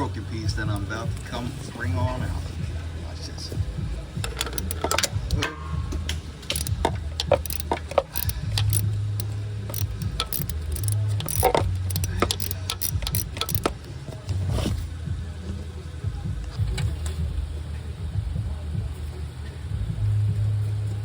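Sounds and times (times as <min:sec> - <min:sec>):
steady low hum: 0:00.0 - 0:21.0
metallic clicks of hand tools: 0:04.2 - 0:13.7.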